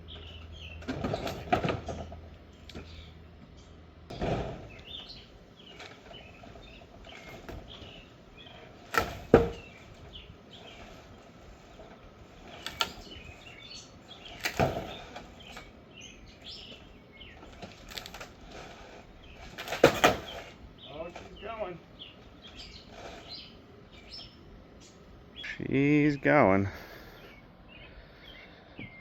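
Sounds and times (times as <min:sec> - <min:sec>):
demolition knocks on wood: 0:08.9 - 0:09.8, 0:19.6 - 0:20.5.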